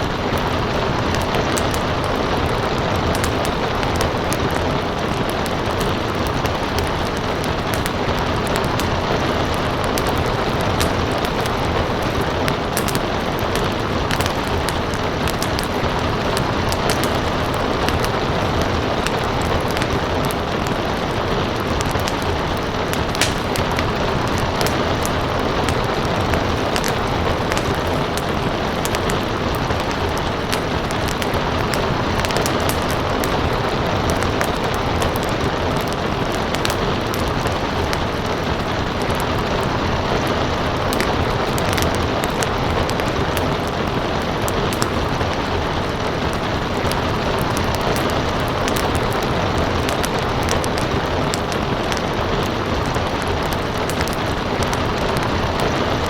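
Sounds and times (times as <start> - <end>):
steady rain hiss: 0.0 - 56.0
wood fire crackling: 0.0 - 56.0.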